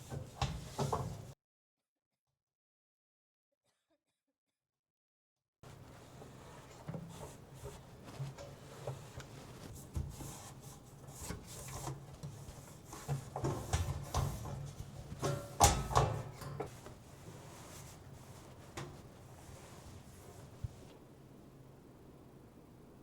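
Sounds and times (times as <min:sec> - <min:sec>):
rubbing while wiping: 0:05.7 - 0:15.6, 0:16.7 - 0:21.0.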